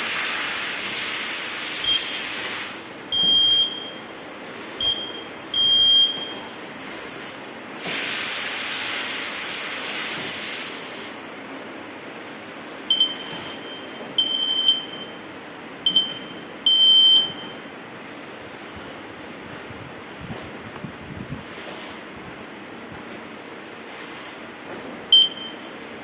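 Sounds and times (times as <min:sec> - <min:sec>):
smoke alarm beeps: 0:01.8 - 0:02.1, 0:03.1 - 0:04.1, 0:04.8 - 0:06.5, 0:12.9 - 0:17.7, 0:25.1 - 0:25.7.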